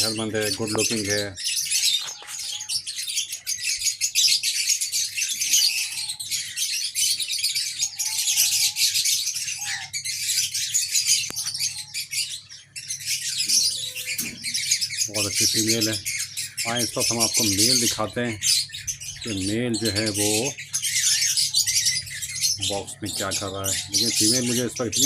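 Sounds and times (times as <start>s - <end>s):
cage birds twittering: 0.0s - 25.0s
low bird calls: 0.0s - 25.0s.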